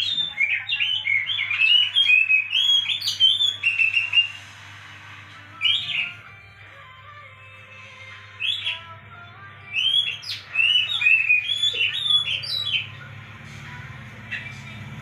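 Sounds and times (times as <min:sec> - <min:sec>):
bird whistling song: 0:00.0 - 0:06.3, 0:07.8 - 0:09.0, 0:09.6 - 0:13.0.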